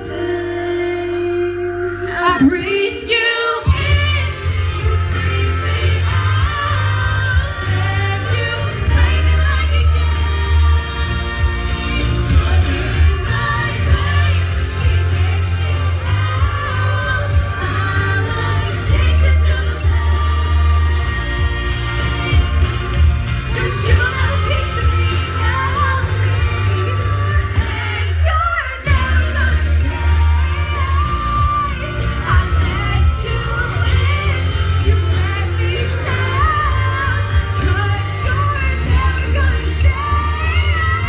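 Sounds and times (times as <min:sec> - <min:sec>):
bass-heavy backing track with beat: 0:00.0 - 0:41.0
female vocal group singing: 0:00.0 - 0:41.0.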